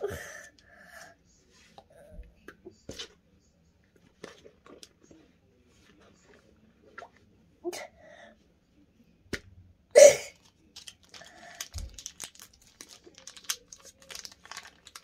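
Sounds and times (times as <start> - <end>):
packaging crinkling and rustling: 10.4 - 15.0.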